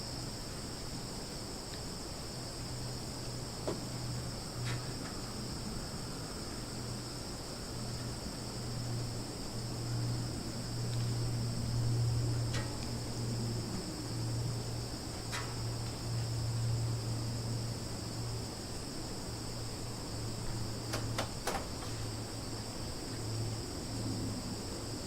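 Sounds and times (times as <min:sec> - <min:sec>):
crickets chirping: 0:00.0 - 0:25.0.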